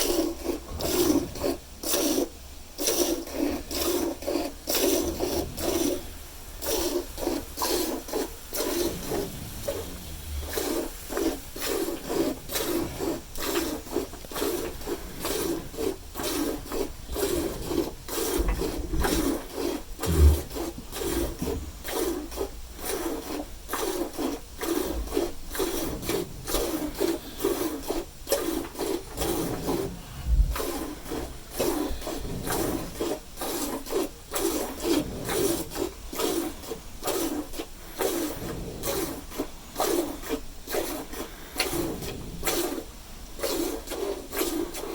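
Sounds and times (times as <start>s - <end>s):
milk squirting into a pail: 0.0s - 42.8s, 43.4s - 44.9s
dull low thumps: 8.8s - 11.6s, 20.0s - 21.9s, 29.2s - 32.6s.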